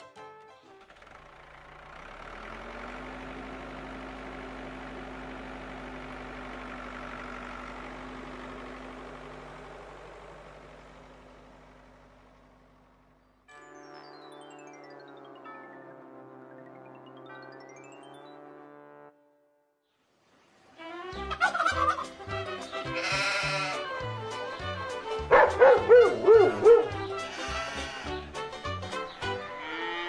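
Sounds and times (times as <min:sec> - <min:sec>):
vehicle engine running: 0:00.4 - 0:13.5, 0:23.8 - 0:29.2.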